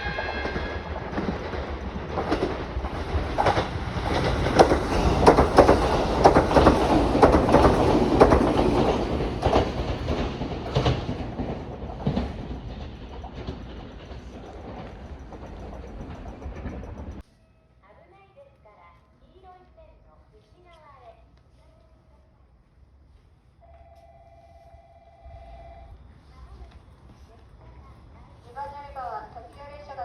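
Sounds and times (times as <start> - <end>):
train wheels clattering over rails: 0.0 - 17.2.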